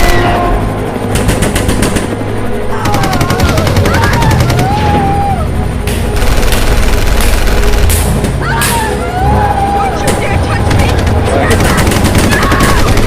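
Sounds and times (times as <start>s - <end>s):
rapid automatic gunfire: 1.1s - 2.2s, 2.8s - 4.8s, 6.1s - 8.1s, 10.2s - 13.0s
wavering wail: 2.7s - 5.8s, 8.4s - 10.3s.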